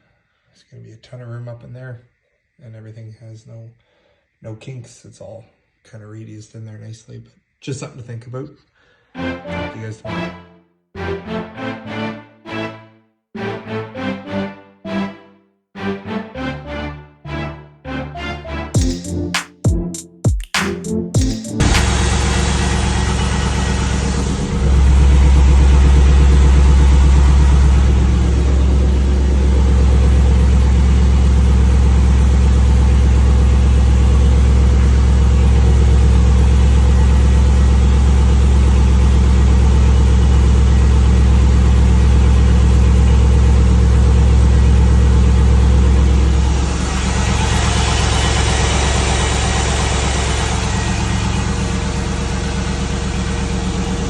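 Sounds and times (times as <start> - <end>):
engine idling with deep drone: 21.6 - 54.0.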